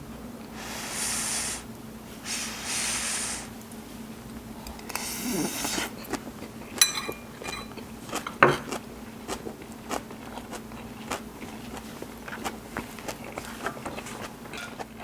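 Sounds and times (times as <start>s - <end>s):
cutlery and dishes clinking: 6.0s - 8.7s, 14.5s - 14.9s.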